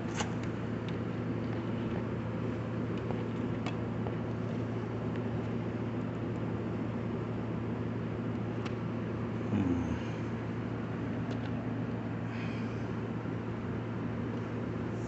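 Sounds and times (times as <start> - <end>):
low machine hum: 0.0 - 15.0.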